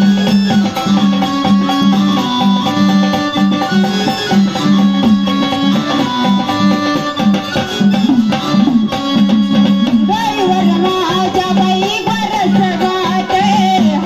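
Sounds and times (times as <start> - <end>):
string instrument melody: 0.0 - 14.0.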